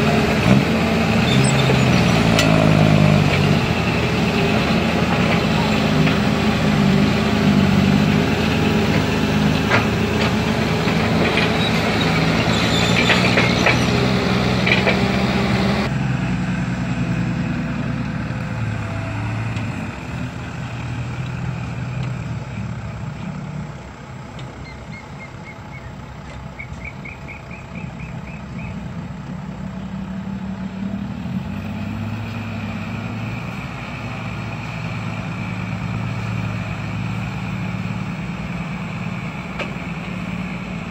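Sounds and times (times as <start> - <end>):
heavy diesel engines running: 0.0 - 40.9
digging knocks and clatter: 8.7 - 15.5.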